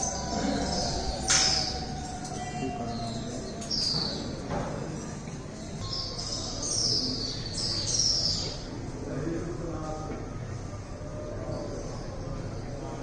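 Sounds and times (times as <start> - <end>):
birds chirping: 0.0 - 9.0.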